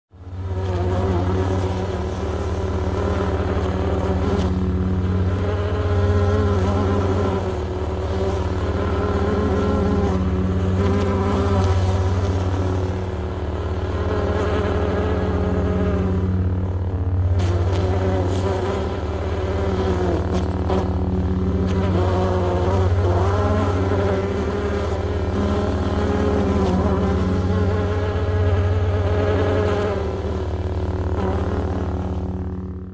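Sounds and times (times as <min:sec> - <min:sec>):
deep buzzing of bees: 0:00.2 - 0:32.9
deep lightsaber hum: 0:01.8 - 0:32.9
deep low hum: 0:14.8 - 0:24.2.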